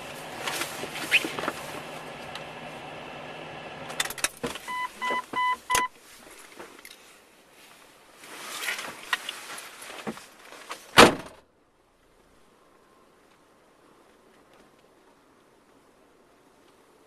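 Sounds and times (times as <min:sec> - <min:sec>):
rustling: 0:00.0 - 0:02.3, 0:04.5 - 0:11.0
car engine idling: 0:00.0 - 0:05.9
car warning chime beeping: 0:04.7 - 0:05.9
loud thump: 0:11.0 - 0:11.4.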